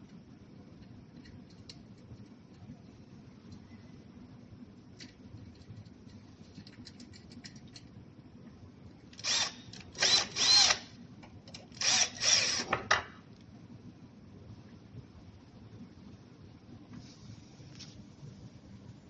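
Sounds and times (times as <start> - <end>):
power drill whirring: 9.2 - 10.9, 11.8 - 12.7.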